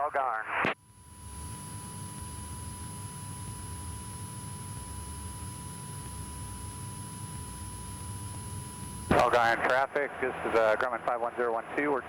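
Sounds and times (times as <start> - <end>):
thin electrical whine: 0.0 - 12.0
aircraft engine droning: 1.0 - 10.6.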